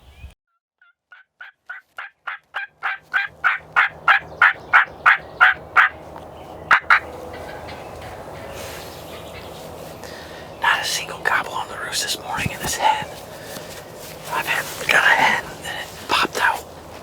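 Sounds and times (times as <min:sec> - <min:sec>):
turkey yelping: 0:01.1 - 0:06.0, 0:06.7 - 0:09.6.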